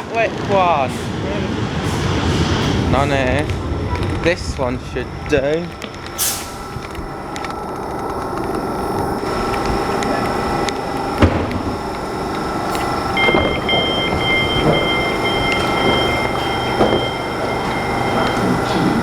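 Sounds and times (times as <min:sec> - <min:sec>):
electric train rumble and hum: 0:00.0 - 0:19.0
high-pitched tone: 0:12.5 - 0:19.0
clunk: 0:12.8 - 0:18.9.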